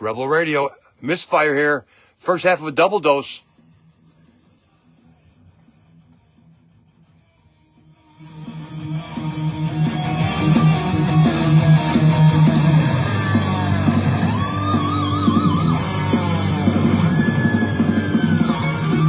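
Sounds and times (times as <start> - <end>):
heavy metal music: 8.2 - 19.0
wavering lead guitar line: 8.6 - 19.0.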